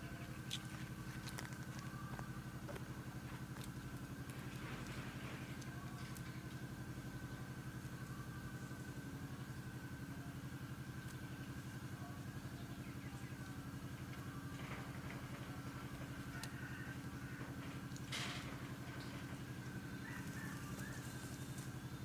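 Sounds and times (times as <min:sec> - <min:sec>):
engine idling: 0:00.0 - 0:22.0.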